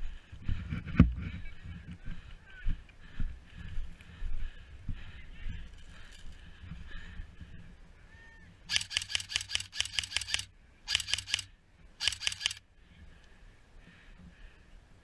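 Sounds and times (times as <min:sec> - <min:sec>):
airsoft gun rapid shots: 0:08.7 - 0:12.6.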